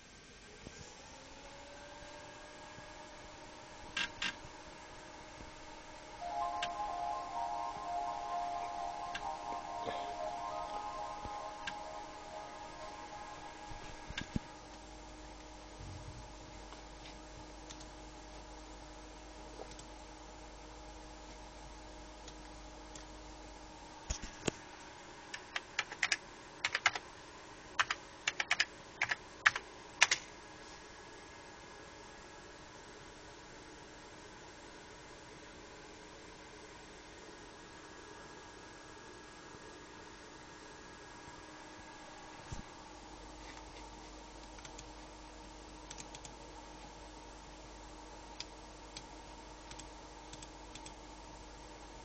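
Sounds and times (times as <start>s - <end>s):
faint steady hum: 0.0s - 52.0s
computer keyboard key clicks: 25.8s - 27.0s, 27.8s - 30.2s.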